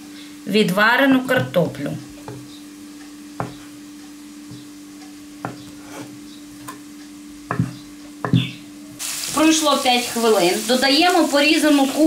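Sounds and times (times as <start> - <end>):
knife knocking on cutting board: 2.2 - 2.5, 3.4 - 3.7, 5.4 - 6.8, 7.5 - 8.6.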